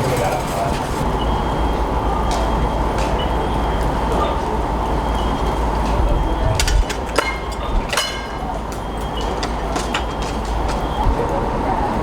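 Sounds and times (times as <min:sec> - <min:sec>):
vehicle engines idling: 0:00.0 - 0:12.0
sharp metal clanks: 0:06.5 - 0:11.0.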